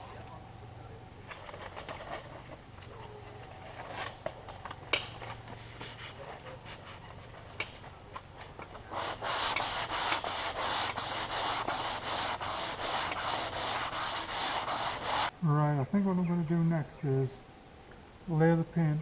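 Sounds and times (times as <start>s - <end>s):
hand sanding strokes: 8.8s - 15.3s.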